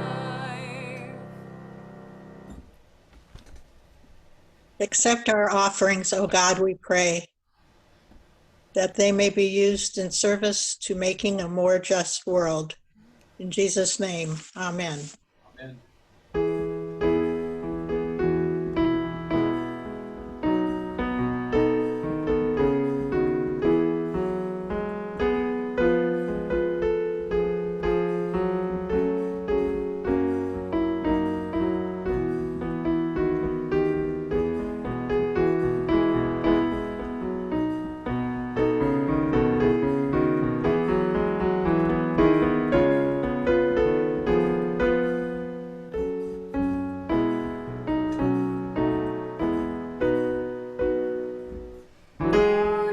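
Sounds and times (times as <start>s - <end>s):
piano music: 0.0s - 2.7s, 16.3s - 52.9s.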